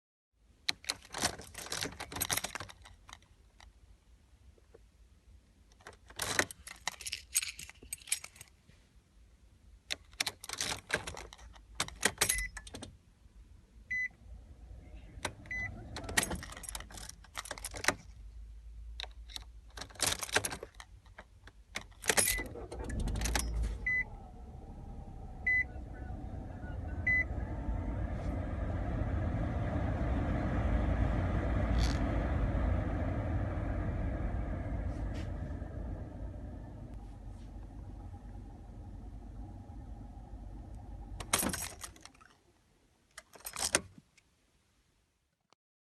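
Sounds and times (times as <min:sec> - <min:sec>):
car keys jangling in ignition: 0:00.7 - 0:03.7, 0:05.8 - 0:08.5, 0:09.9 - 0:12.9, 0:15.3 - 0:18.2, 0:19.0 - 0:24.2, 0:40.8 - 0:42.4, 0:43.1 - 0:44.0
car engine cranking and starting: 0:13.9 - 0:42.5, 0:43.1 - 0:44.0
car engine idling: 0:22.4 - 0:42.2.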